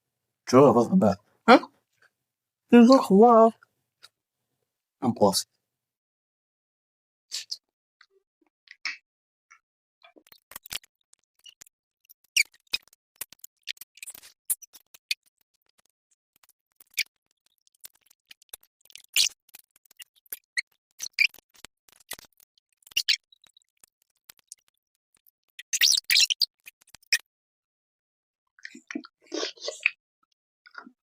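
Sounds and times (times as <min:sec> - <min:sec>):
wet mouth chewing smacks: 0:12.3 - 0:24.7.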